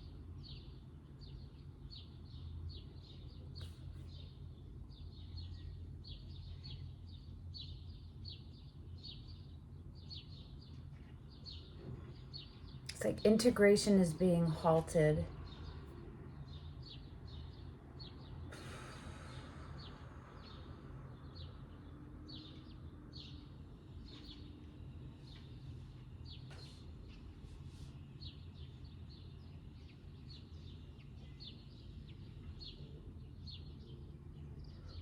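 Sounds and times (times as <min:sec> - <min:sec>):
low steady hum: 0:00.0 - 0:16.7
small birds chirping: 0:00.0 - 0:35.0.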